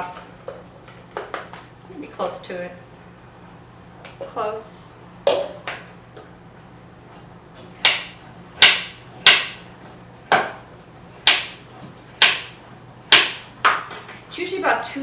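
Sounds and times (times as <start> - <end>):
cup knocking on counter: 5.2 - 5.8.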